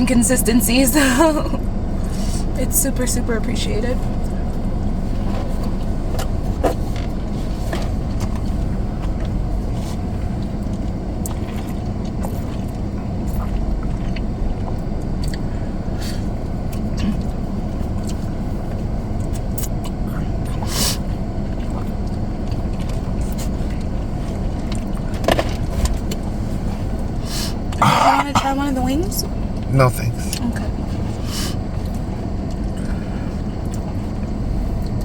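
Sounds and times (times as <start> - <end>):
car cabin rumble: 0.0 - 35.0
crunching of eating chicken wings: 5.6 - 28.1.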